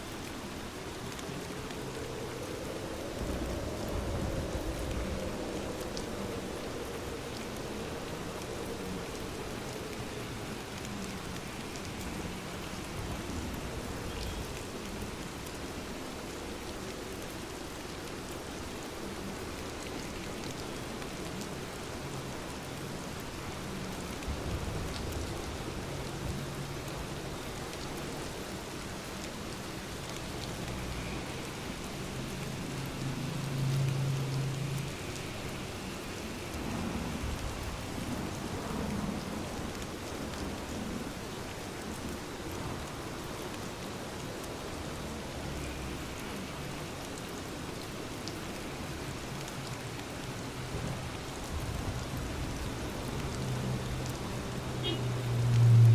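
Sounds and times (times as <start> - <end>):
steady rain falling: 0.0 - 55.9
rumble of thunder: 1.4 - 10.6.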